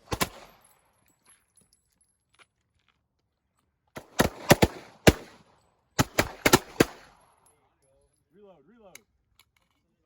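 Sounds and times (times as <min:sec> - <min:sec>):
pistol shots: 0:00.0 - 0:00.6, 0:04.0 - 0:07.2.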